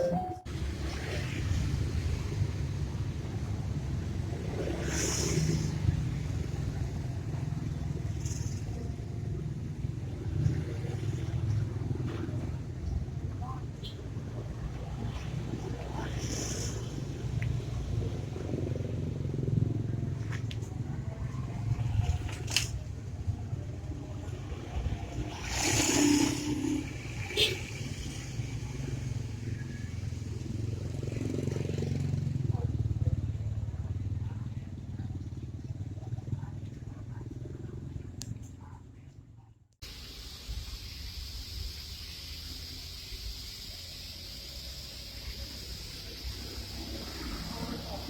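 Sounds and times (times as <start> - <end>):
short high-pitched sounds: 0.0 - 0.5
low rumble of vehicle traffic: 0.0 - 48.0.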